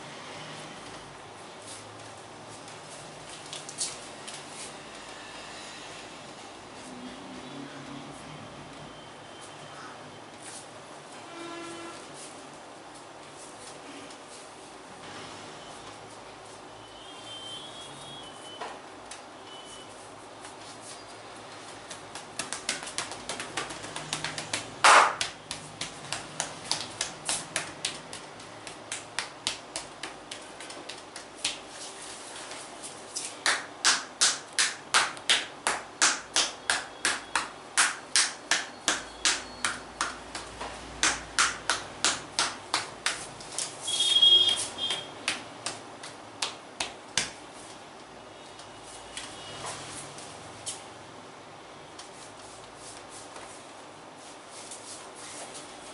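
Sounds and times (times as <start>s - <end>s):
hands slapping on a back: 21.7s - 31.9s, 33.4s - 43.8s, 44.4s - 47.4s.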